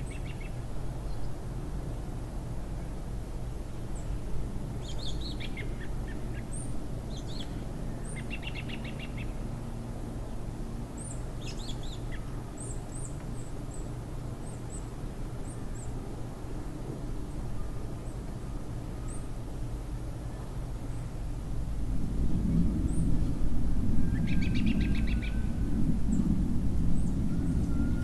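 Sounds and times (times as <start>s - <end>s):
steady low rumble: 19.4s - 28.0s.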